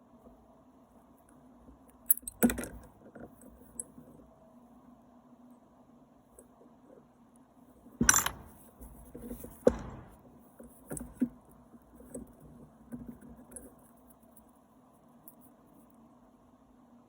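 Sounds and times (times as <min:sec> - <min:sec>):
small metal parts clinking: 0:02.0 - 0:02.9, 0:08.0 - 0:08.7
metal parts clattering: 0:08.0 - 0:08.6.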